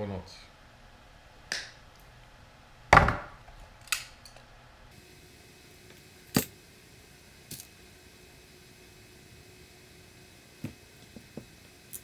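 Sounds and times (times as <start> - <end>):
hand tools clicking and snapping: 5.7 - 7.8.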